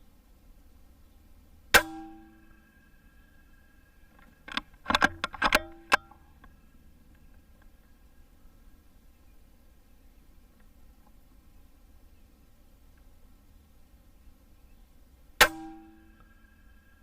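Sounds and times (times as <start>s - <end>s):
airgun shot: 1.7s - 2.6s, 15.4s - 16.2s
metallic ring: 1.8s - 3.4s, 5.1s - 6.3s, 15.4s - 16.9s
sharp metallic clicks: 4.2s - 7.7s.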